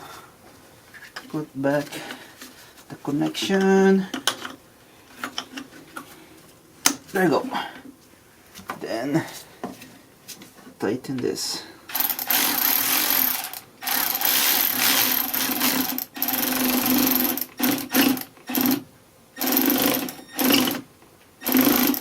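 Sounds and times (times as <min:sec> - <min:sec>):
cordless power driver bursts: 0:11.9 - 0:18.8, 0:21.4 - 0:22.0.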